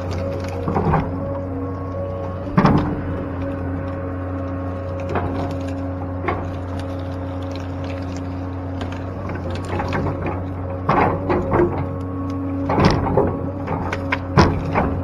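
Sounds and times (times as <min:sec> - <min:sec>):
excavator diesel engine drone: 0:00.0 - 0:15.0
machine knocks and clunks: 0:02.5 - 0:03.1, 0:09.7 - 0:11.9, 0:12.6 - 0:15.0.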